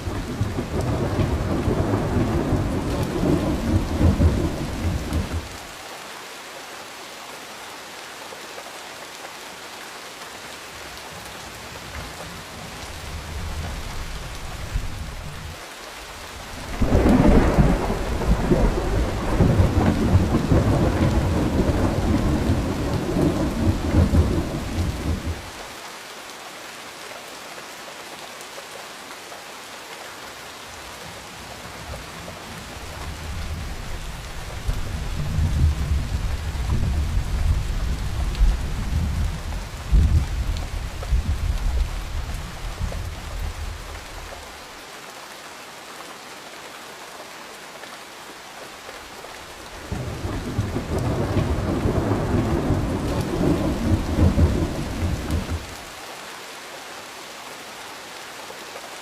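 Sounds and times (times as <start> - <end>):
rolling thunder: 0.0 - 5.5, 16.6 - 25.4, 49.8 - 55.8
steady rain falling: 0.0 - 59.0.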